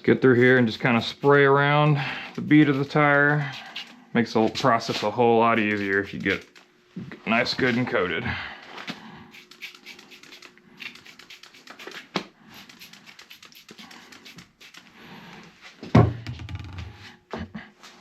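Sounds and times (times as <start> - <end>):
spray bottle spritzing: 3.4 - 3.9, 9.3 - 15.0
heavy thump: 15.9 - 16.9.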